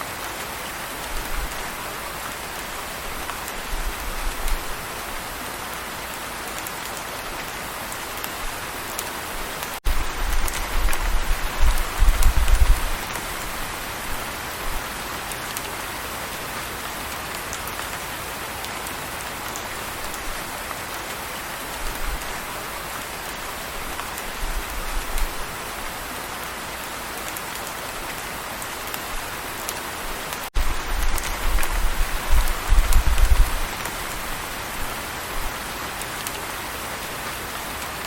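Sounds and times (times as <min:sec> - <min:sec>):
steady rain falling: 0:00.0 - 0:38.0
raindrop ticks: 0:29.6 - 0:34.1.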